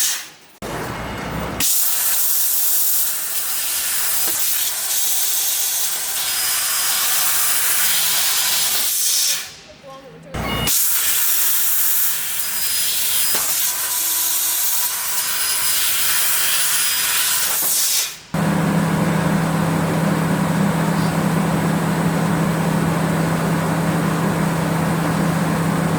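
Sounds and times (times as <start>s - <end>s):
laser cutter gas jet hissing: 1.6s - 9.5s, 10.7s - 18.2s
low machine hum: 18.4s - 25.9s.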